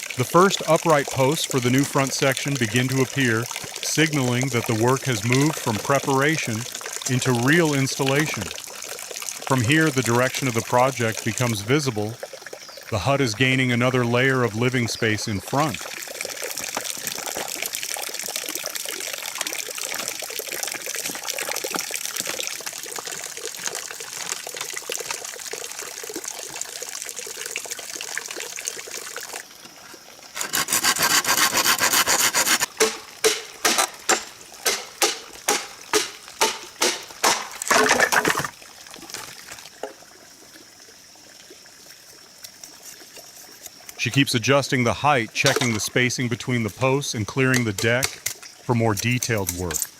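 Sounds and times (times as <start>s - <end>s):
running water: 0.0s - 49.9s
hand saw cutting bamboo: 30.4s - 38.0s.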